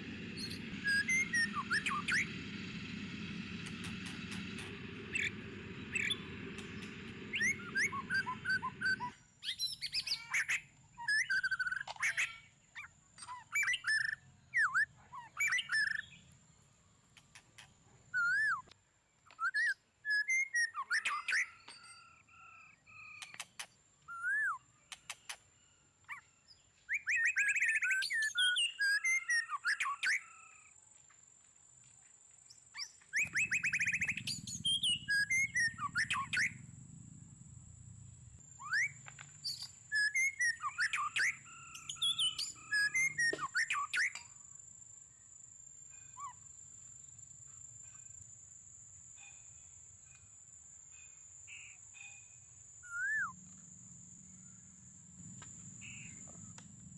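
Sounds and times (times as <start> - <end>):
thin high-pitched whine: 0.0 - 9.2, 33.2 - 44.1
birds singing: 0.0 - 30.8, 32.5 - 48.0, 50.9 - 56.9.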